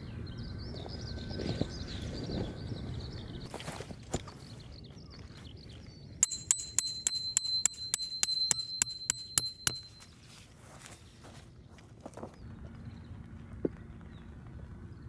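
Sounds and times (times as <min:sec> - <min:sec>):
light metallic clinks: 0:06.2 - 0:10.1
high ringing tone: 0:06.2 - 0:10.2.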